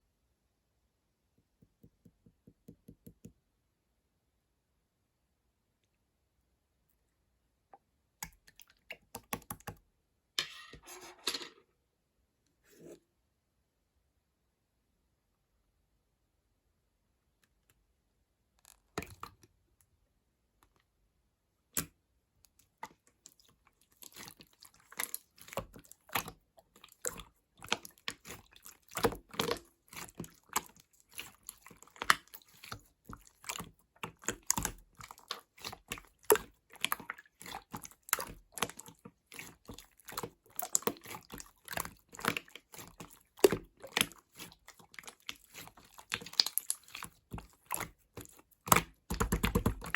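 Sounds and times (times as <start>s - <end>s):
slime squished by hand: 22.8s - 49.9s.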